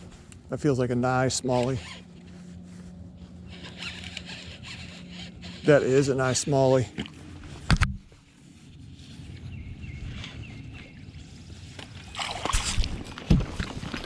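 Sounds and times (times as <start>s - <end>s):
sharp knocks in a boat: 7.0s - 8.1s.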